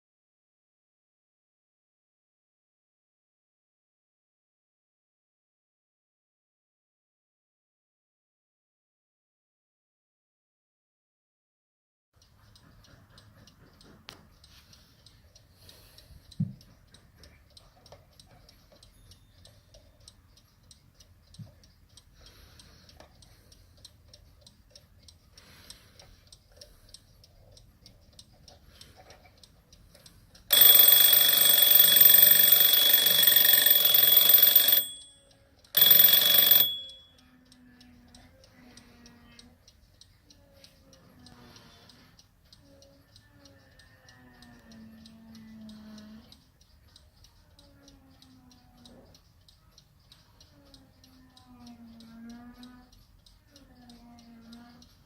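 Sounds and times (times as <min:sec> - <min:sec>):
alarm clock ticking: 0:12.2 - 0:55.0
alarm bell ringing: 0:30.5 - 0:37.2.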